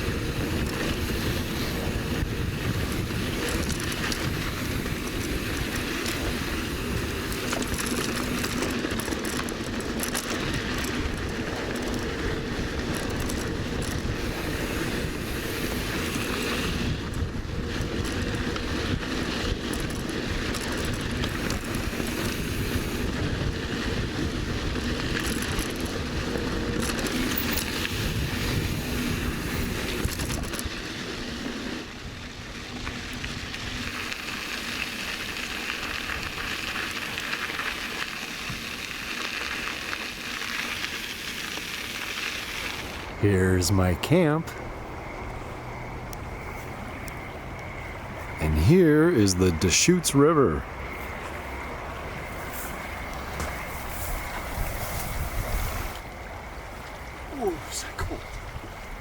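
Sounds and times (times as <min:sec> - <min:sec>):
wind on microphone: 0:00.0 - 0:31.5, 0:50.6 - 0:59.0
bike tyres rolling on dirt: 0:00.0 - 0:59.0.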